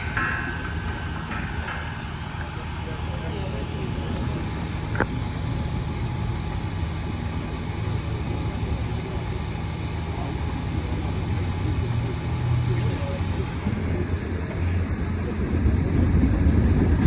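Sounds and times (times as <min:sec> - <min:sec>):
engine idling: 0:00.0 - 0:17.0.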